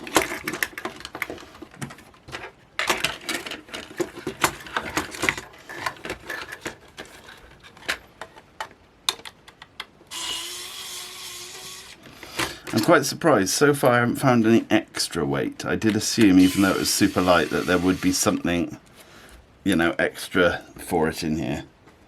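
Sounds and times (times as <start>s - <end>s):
steady hiss: 10.0s - 21.7s.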